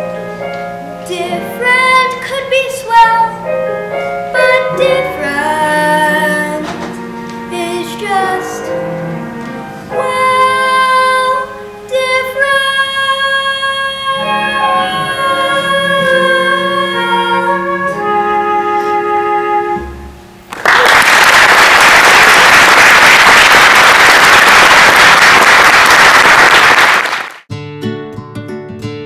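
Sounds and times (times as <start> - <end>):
closing chords of a song: 0.0 - 20.6
audience applause: 20.5 - 27.5.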